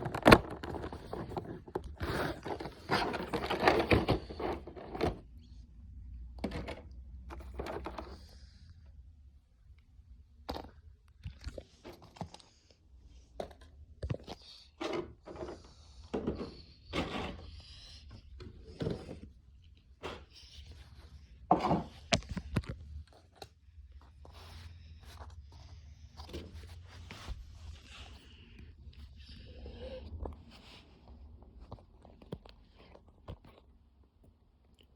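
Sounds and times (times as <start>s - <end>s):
packaging rustling and scraping: 0.0s - 5.2s.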